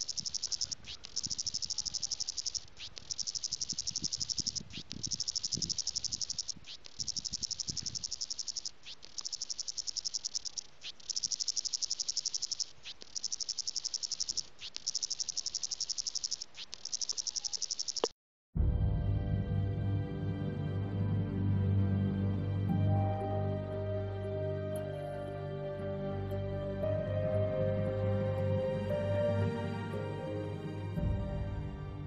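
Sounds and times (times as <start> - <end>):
cicada pulsing buzz: 0.0 - 18.1
soft background music: 18.6 - 32.0.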